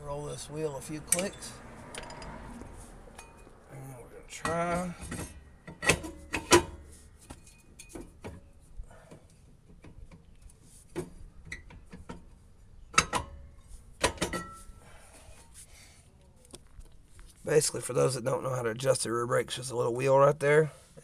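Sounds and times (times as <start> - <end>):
small metallic clicks and knocks: 1.0 - 2.4, 4.4 - 8.5, 9.1 - 14.7.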